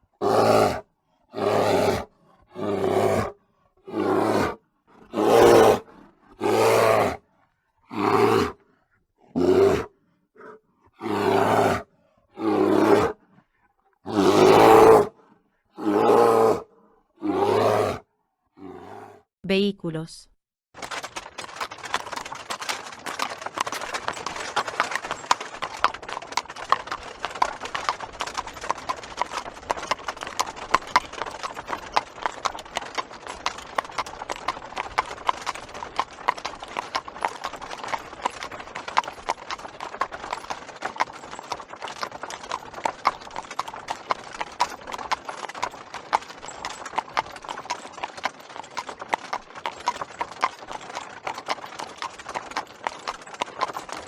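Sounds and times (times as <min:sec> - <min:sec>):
horse hooves clip-clopping: 0:20.8 - 0:54.0.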